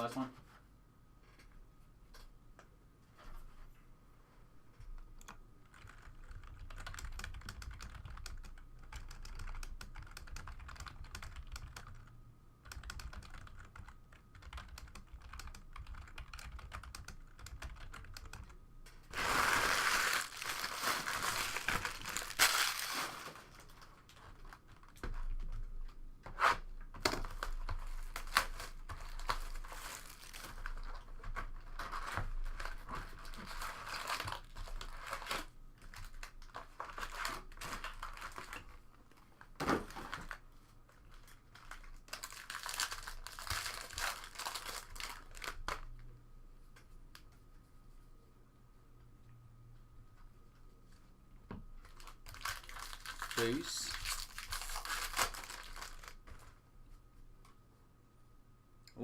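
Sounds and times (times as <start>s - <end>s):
wrapper crinkling and tearing: 19.1s - 25.0s, 27.1s - 38.8s, 41.1s - 45.9s, 51.8s - 56.3s.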